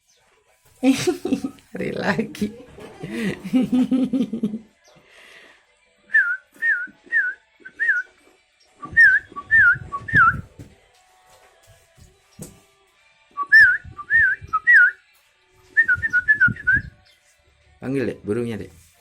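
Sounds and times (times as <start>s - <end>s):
person whistling short notes: 8.8s - 10.5s, 13.4s - 15.1s, 15.8s - 17.0s.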